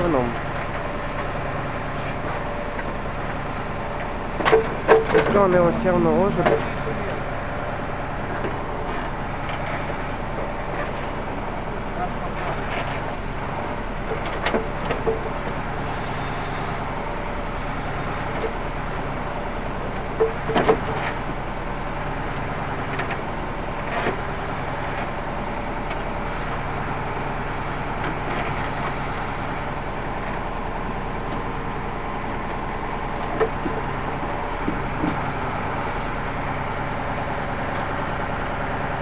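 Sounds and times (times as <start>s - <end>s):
machine engine running: 0.0s - 39.0s
logs knocking and clunking: 4.0s - 7.2s, 20.1s - 21.4s, 34.6s - 35.3s.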